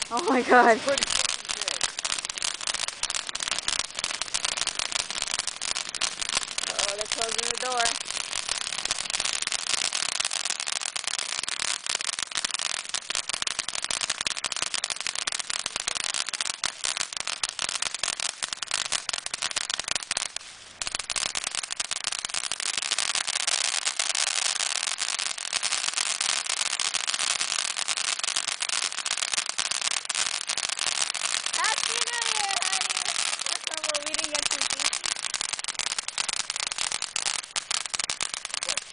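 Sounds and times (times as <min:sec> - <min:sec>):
fireworks crackling: 0:00.0 - 0:38.9.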